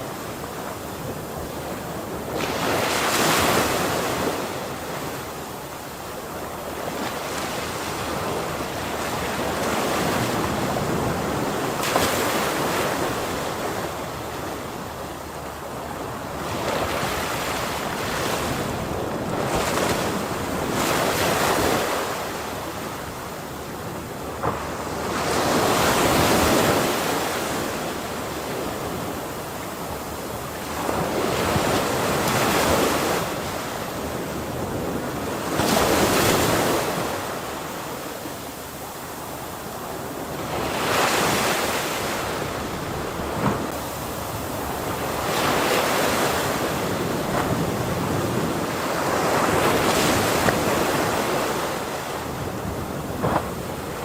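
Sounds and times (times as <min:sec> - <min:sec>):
ocean waves breaking: 0:00.0 - 0:54.0.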